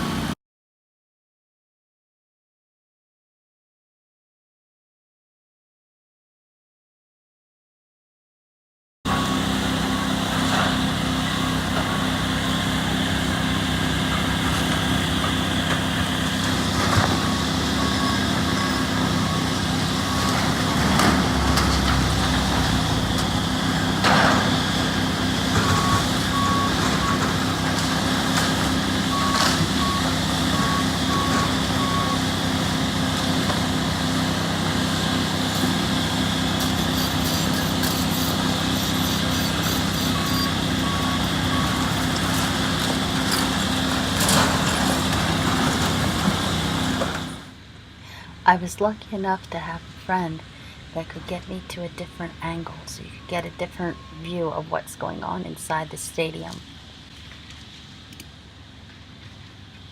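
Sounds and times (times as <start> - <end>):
heavy construction machinery running: 0.0 - 0.4, 9.1 - 59.9
backup alarm beeping: 17.0 - 20.6, 25.6 - 27.4, 29.1 - 32.3, 51.0 - 55.4.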